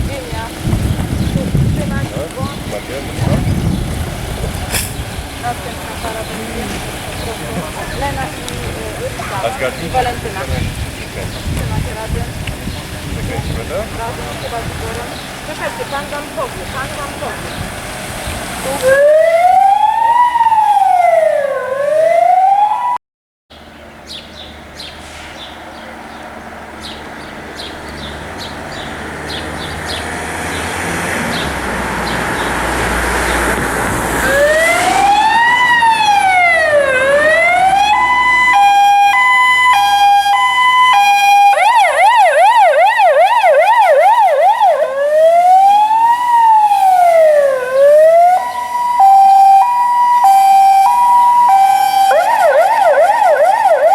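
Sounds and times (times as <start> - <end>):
electronic siren cycling tones: 18.8 - 23.0, 34.2 - 53.9
rushing noise: 24.8 - 42.2.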